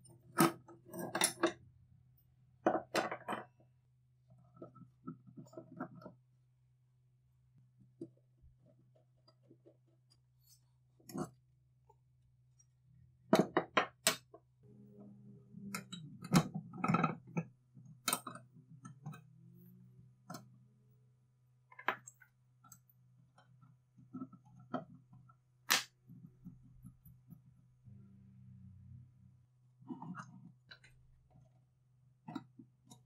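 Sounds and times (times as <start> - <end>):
faint steady hum: 14.1 - 33.0.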